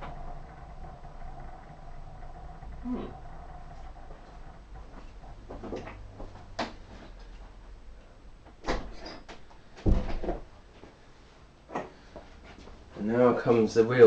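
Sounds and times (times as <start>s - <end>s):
heavy thump: 9.8s - 10.5s.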